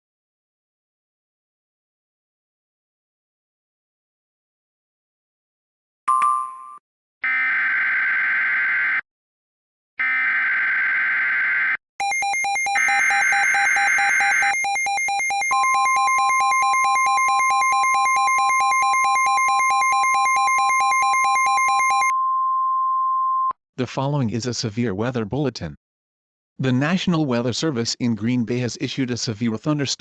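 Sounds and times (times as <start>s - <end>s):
rapidly pulsing electronic alarm: 7.2s - 9.0s, 10.0s - 22.1s
steady warning alarm tone: 12.0s - 22.1s.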